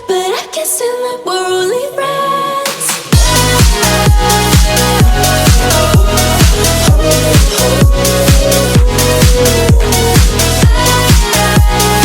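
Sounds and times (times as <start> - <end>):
electronic dance music: 1.9 - 12.0
kick drum: 3.0 - 12.0
sustained synth chords: 3.1 - 12.0.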